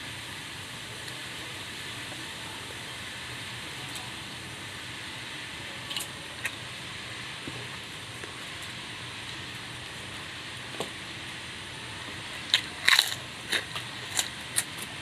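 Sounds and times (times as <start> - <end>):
steady background hiss: 0.0 - 15.0
crunchy food being chewed: 12.3 - 15.0.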